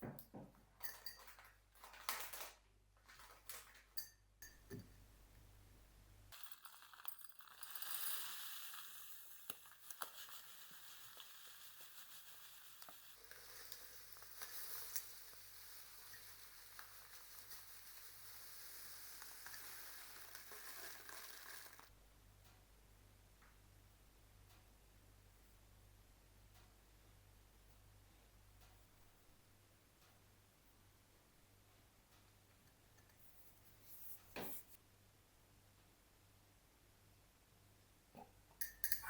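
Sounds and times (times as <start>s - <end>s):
kitchenware clinking: 0.0s - 2.0s, 3.8s - 5.0s, 38.6s - 39.0s
steady sizzling hiss: 4.4s - 39.0s.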